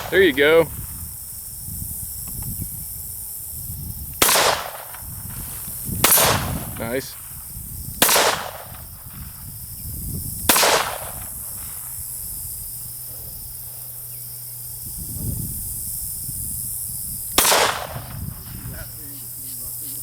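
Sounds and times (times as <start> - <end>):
pistol shots: 4.2 - 5.0, 6.0 - 6.8, 8.0 - 8.8, 10.5 - 11.3, 17.4 - 18.2.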